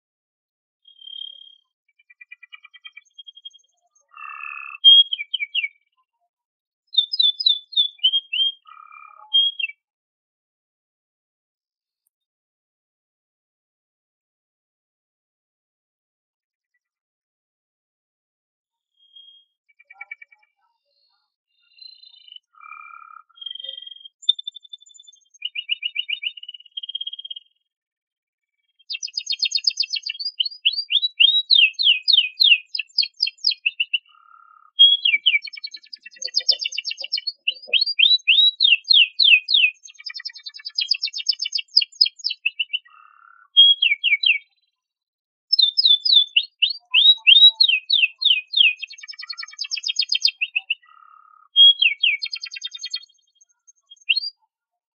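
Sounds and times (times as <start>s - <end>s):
canary singing: 0.9s - 5.8s, 6.9s - 9.8s, 21.8s - 27.4s, 28.9s - 44.6s, 45.5s - 54.4s.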